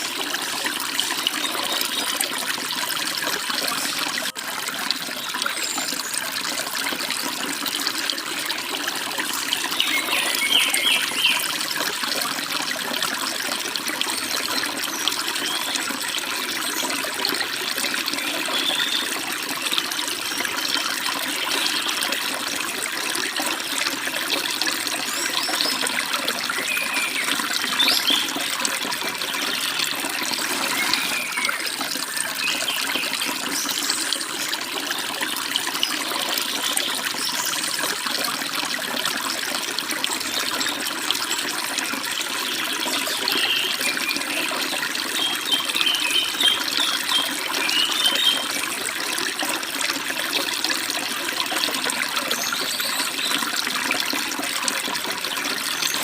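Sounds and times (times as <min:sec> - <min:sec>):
stream babbling over rocks: 0:00.0 - 0:56.0
small birds chirping: 0:09.7 - 0:11.4, 0:25.2 - 0:28.5, 0:29.2 - 0:34.1.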